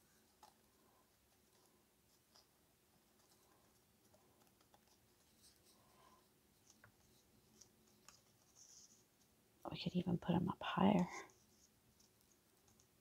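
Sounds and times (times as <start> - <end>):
paper rustling: 0.0 - 9.3.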